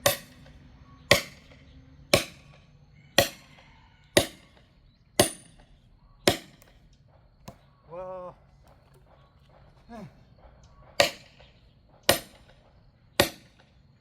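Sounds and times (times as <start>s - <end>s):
axe chopping firewood: 0.0s - 0.5s, 1.1s - 3.6s, 4.2s - 4.6s, 5.2s - 7.7s, 10.8s - 12.5s, 13.2s - 13.7s.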